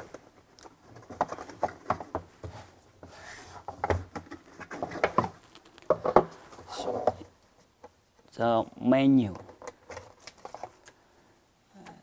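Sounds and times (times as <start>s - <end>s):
box being handled and opened: 0.0s - 7.4s.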